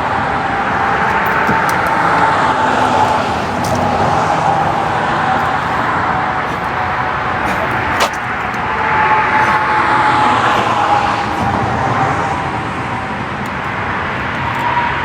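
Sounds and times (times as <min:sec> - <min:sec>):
road traffic: 0:00.0 - 0:15.0.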